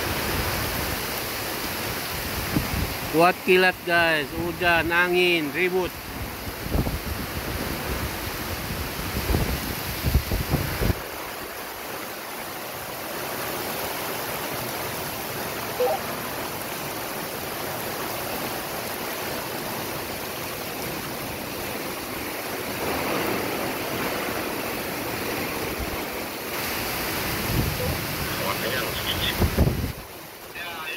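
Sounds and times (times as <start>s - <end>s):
heavy rain pouring: 0.0s - 30.9s
wind buffeting microphone: 2.2s - 3.1s, 6.0s - 11.1s, 22.6s - 28.2s, 29.3s - 30.1s.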